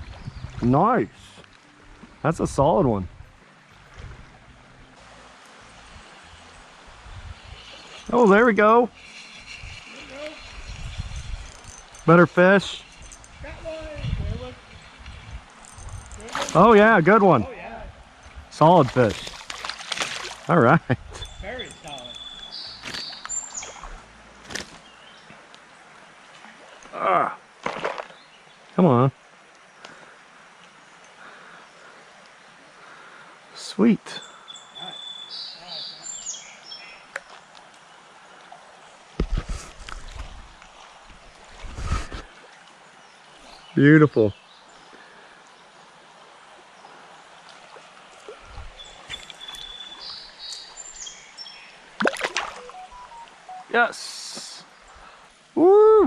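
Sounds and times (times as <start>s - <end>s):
creek water rushing: 0.0s - 56.0s
outdoor hiss: 0.6s - 12.9s, 28.2s - 56.0s
high-pitched bird calls: 34.4s - 36.9s, 52.6s - 53.7s
short high-pitched tones: 52.6s - 53.8s.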